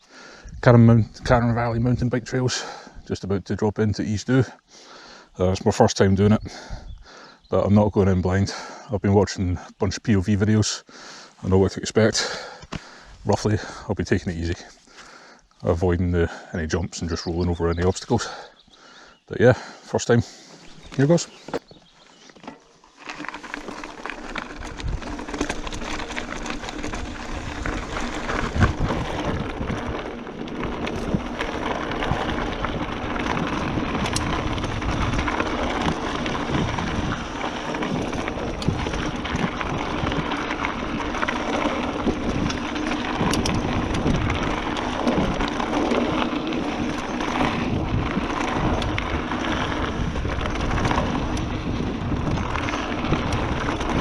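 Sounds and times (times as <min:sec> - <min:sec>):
tyre rumble on trail: 0:19.5 - 0:54.0
bike rattles and knocks: 0:20.7 - 0:54.0.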